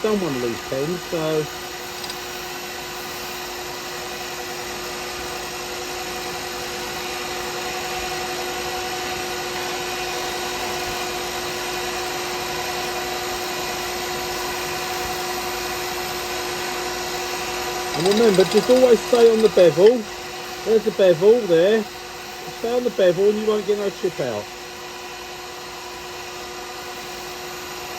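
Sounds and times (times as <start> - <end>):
lathe motor hum: 0.1 - 2.5, 17.9 - 20.3
turning tool cutting hiss: 0.1 - 2.5, 17.9 - 21.8.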